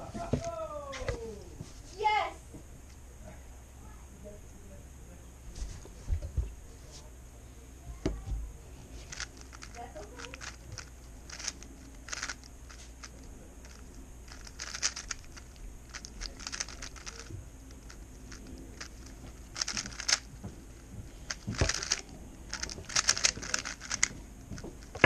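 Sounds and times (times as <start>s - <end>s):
plastic speedcube clattering turns: 9.0s - 25.0s.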